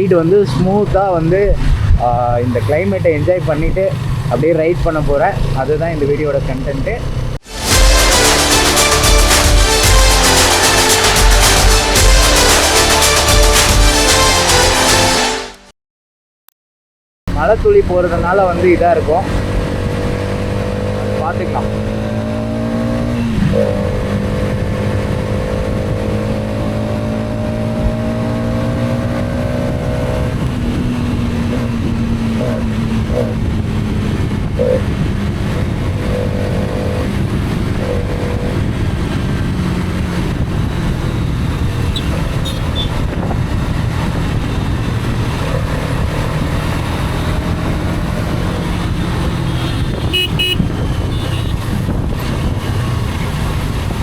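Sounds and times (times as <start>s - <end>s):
wind and road noise: 0.0s - 15.2s, 17.3s - 54.0s
motorcycle engine running: 17.4s - 54.0s
short horn toots: 41.9s - 43.0s, 49.5s - 51.6s.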